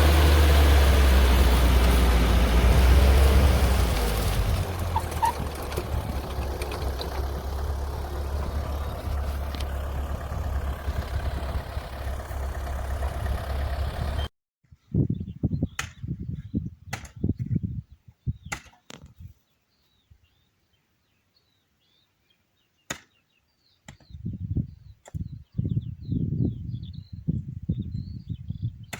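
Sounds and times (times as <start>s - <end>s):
low bumps: 0.0s - 14.3s
tiller motor rumbling: 0.0s - 14.3s.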